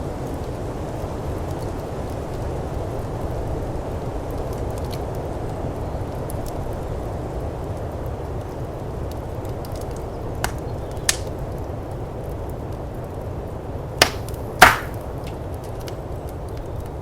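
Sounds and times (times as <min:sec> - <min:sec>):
wood fire crackling: 0:00.0 - 0:17.0
sharp pops from fire: 0:07.8 - 0:13.2, 0:14.0 - 0:17.0.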